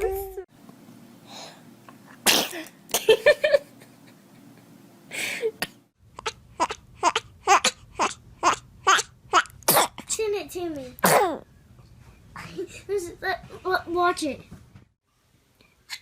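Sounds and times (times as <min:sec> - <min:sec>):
baby sneezing: 0:02.2 - 0:02.6, 0:09.7 - 0:10.2, 0:11.0 - 0:11.4
baby vocal bursts: 0:06.2 - 0:10.2.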